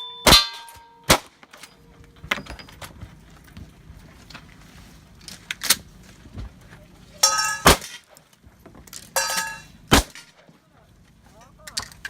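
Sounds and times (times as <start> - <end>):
ringing metal targets: 0.0 - 2.9, 7.2 - 8.1, 9.1 - 10.4
sharp gunshot crack: 0.3 - 1.4, 9.9 - 10.3.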